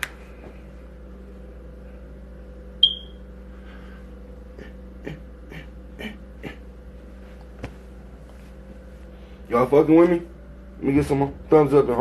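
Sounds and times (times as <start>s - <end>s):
steady low hum: 0.0s - 12.0s
high-pitched electronic beep: 2.8s - 3.2s.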